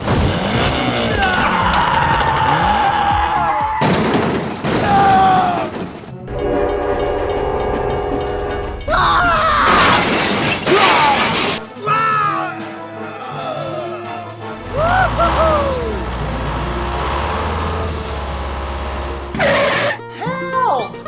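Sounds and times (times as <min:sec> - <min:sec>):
steady horn-like tone: 0:06.3 - 0:08.9, 0:14.1 - 0:19.4.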